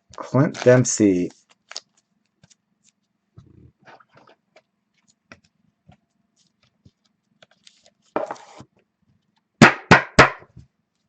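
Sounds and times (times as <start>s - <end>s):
card sleeve rustling: 0.1s - 3.2s, 4.1s - 8.6s
cards tapping and clicking: 0.5s - 3.0s.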